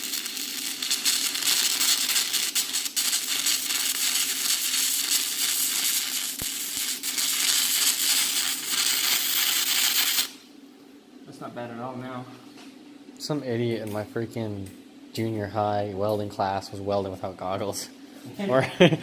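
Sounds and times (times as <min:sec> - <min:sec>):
arc welder crackling: 0:00.0 - 0:10.4.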